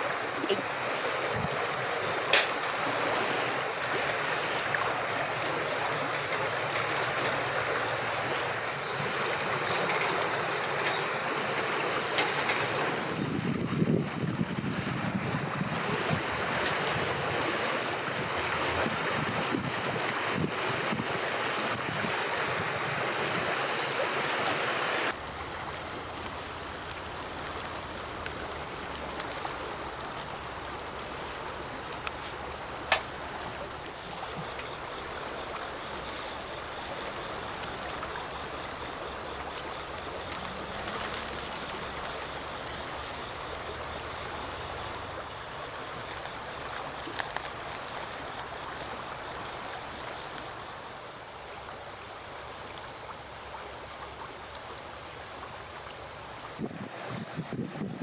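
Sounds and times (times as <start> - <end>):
faint clicks: 44.9 - 50.6.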